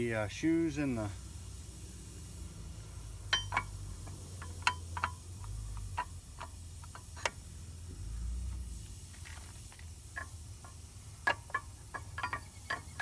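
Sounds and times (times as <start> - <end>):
metallic clicks and clinks: 3.3 - 7.4, 9.2 - 13.0.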